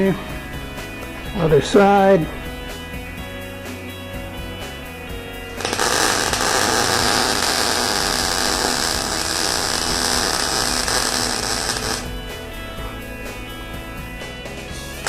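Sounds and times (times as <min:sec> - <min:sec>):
arc welder crackling hiss: 0:05.6 - 0:12.2.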